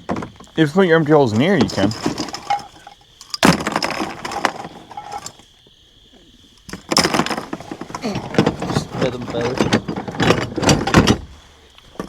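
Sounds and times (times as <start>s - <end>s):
gear clattering and clinking: 1.3s - 5.4s, 6.6s - 12.0s.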